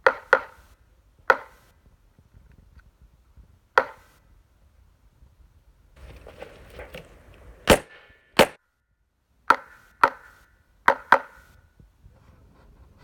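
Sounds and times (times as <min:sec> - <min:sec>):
pistol shots: 0:07.6 - 0:08.6.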